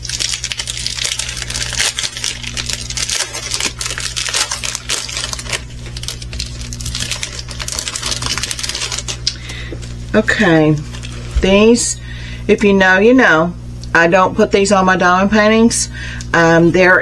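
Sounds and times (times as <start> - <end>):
plastic crinkling: 0.0 - 11.6
steady low hum: 0.0 - 17.0.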